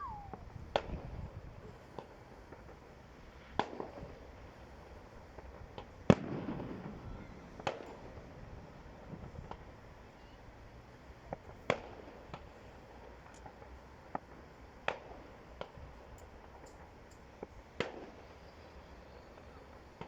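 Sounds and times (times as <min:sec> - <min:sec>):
distant fireworks bangs: 0:00.0 - 0:00.4.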